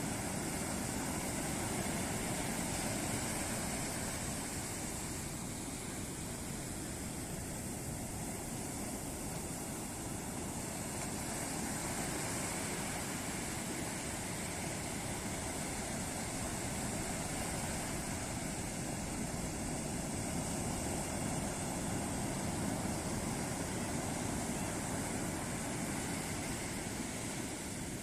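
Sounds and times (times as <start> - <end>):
ocean waves breaking: 0.0 - 28.0.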